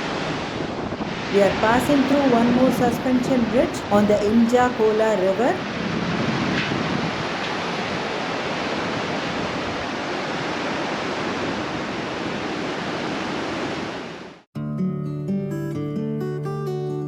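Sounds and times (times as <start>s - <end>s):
river water rushing: 0.0s - 14.4s
guitar music: 14.6s - 17.0s.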